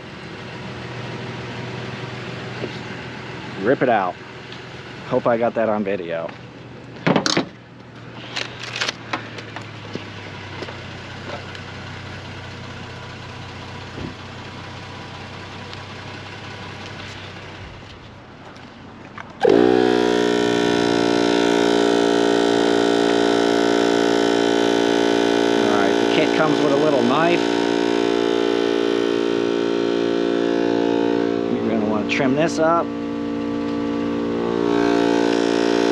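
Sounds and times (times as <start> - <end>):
machine drone with pulsing: 19.4 - 35.9.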